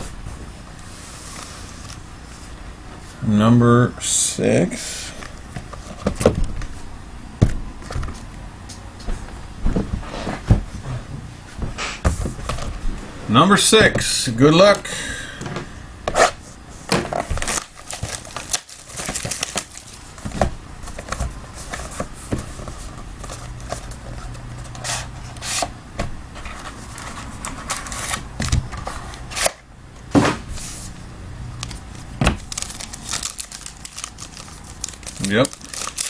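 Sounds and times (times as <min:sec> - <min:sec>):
packaging crinkling and tearing: 0:16.2 - 0:25.6, 0:26.4 - 0:29.6, 0:31.6 - 0:36.0.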